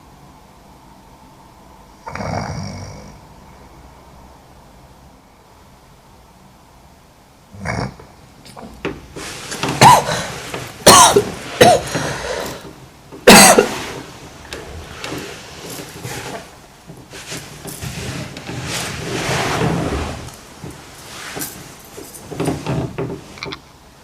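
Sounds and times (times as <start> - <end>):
noisy breath: 9.2 - 12.8
woman coughing: 9.8 - 12.2, 13.3 - 13.8.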